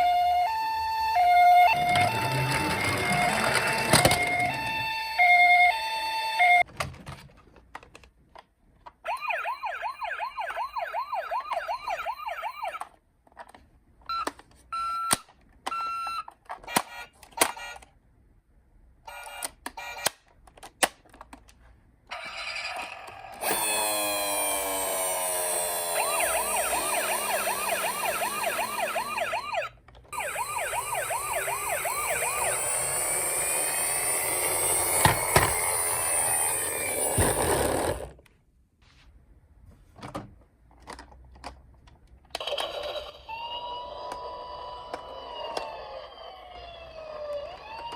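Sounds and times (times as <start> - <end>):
toy siren: 0.0 - 6.6, 9.1 - 13.0, 22.1 - 38.0, 42.4 - 47.9.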